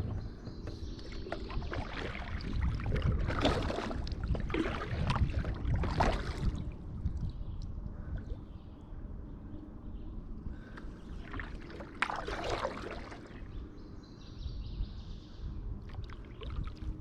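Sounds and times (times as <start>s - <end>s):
steady low rumble: 0.0s - 17.0s
paddle strokes splashing: 0.1s - 6.8s, 11.1s - 13.5s.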